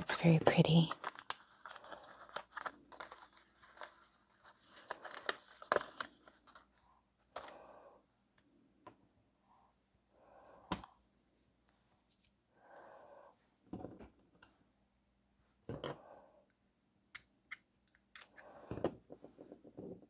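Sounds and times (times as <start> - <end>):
paper rustling and crinkling: 0.2 - 7.5.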